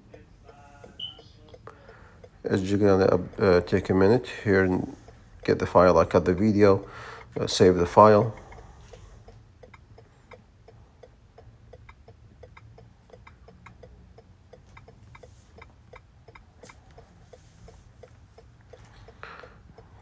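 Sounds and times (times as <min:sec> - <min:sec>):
hazard light flasher ticking: 0:05.0 - 0:20.0.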